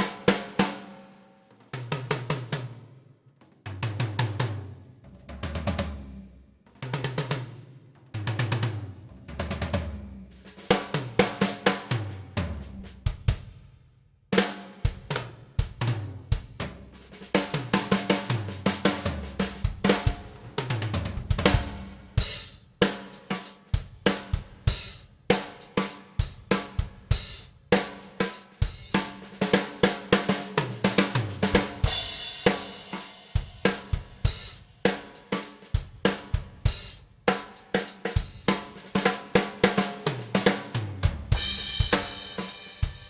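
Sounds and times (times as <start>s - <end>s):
drum kit groove: 0.0s - 43.0s
crash cymbals struck: 31.8s - 33.6s, 41.4s - 43.0s
tom fills: 40.1s - 43.0s.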